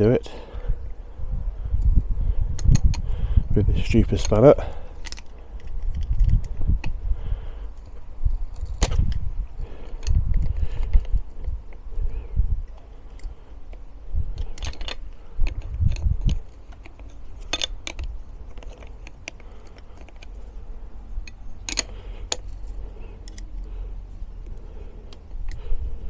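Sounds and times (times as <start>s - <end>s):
spanner clinking on bolt: 2.6s - 3.0s, 3.8s - 6.4s, 14.4s - 20.6s, 21.2s - 23.7s.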